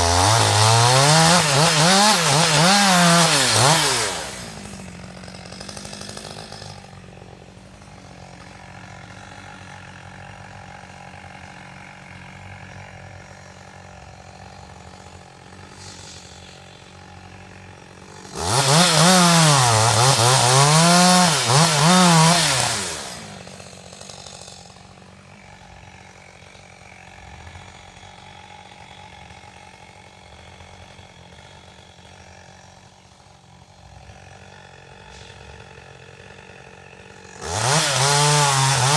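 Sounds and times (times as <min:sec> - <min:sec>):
chainsaw idling and revving: 0:00.0 - 0:38.9.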